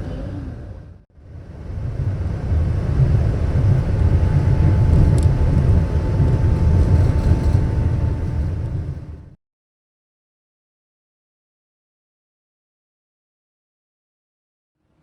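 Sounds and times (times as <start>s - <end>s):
train running noise: 0.0s - 9.4s.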